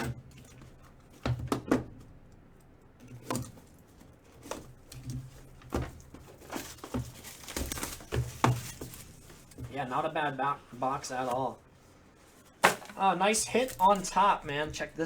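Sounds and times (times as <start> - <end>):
packaging rustling: 3.8 - 9.7, 12.2 - 15.0.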